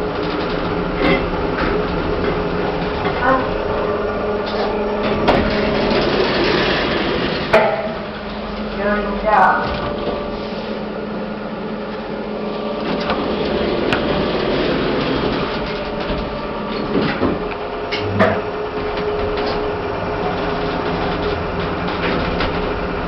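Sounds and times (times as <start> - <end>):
lift mechanical hum: 0.0 - 23.0.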